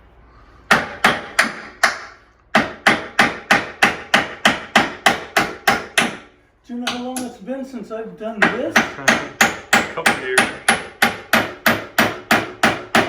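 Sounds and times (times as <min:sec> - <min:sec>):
hammer driving nails into wood: 0:00.7 - 0:06.3, 0:08.4 - 0:13.0.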